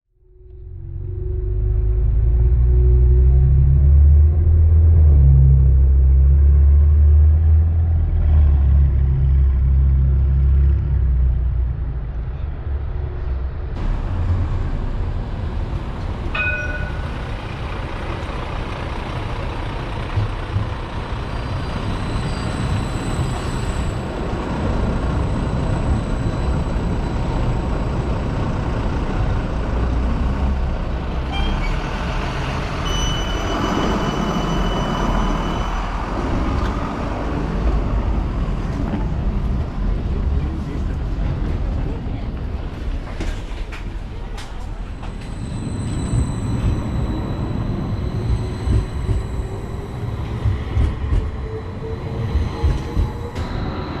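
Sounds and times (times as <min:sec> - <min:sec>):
large vehicle engine rumbling: 0:00.1 - 0:54.0
short electronic beep: 0:32.8 - 0:36.0, 0:45.0 - 0:51.1
steady high tones: 0:44.8 - 0:54.0.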